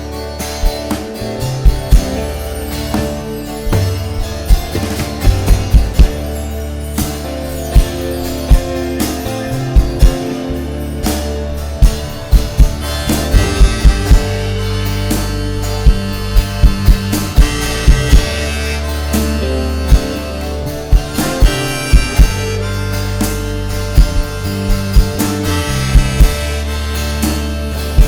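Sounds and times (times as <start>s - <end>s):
guitars over bass: 0.0s - 28.0s
drum hits: 0.6s - 2.4s, 3.0s - 10.5s, 11.1s - 26.6s.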